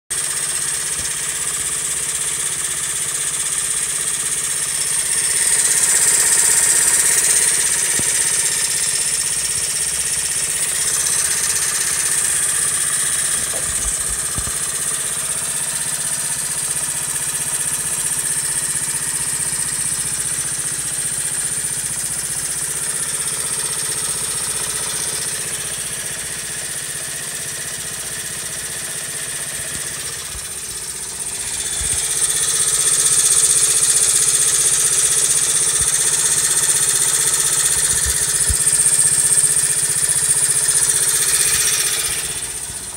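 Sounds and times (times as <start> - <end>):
motorcycle engine idling: 0.1 - 42.9
high-pitched whine: 29.7 - 42.9.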